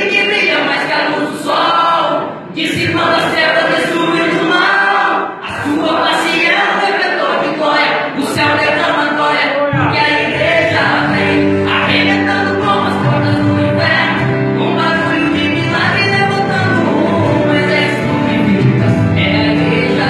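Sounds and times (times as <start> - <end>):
choir singing gospel song: 0.0 - 20.0
sustained bass notes: 9.8 - 20.0.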